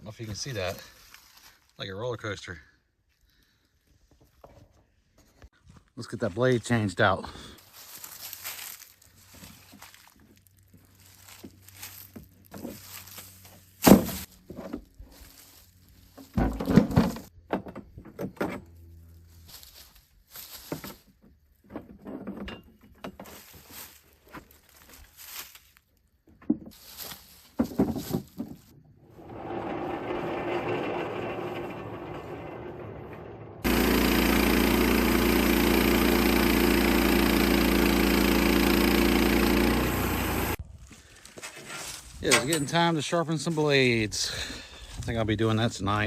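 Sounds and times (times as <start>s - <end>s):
engine running steadily: 30.3s - 40.6s.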